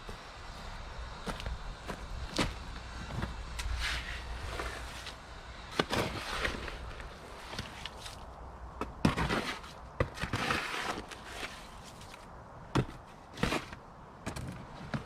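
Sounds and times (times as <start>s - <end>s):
scraping and rustling: 9.0s - 12.3s.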